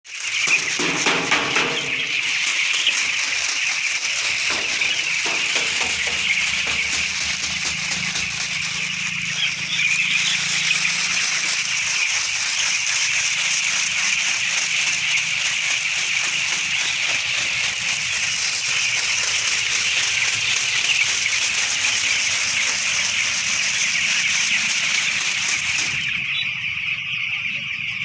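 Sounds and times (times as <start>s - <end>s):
chicks peeping: 0.1s - 28.0s.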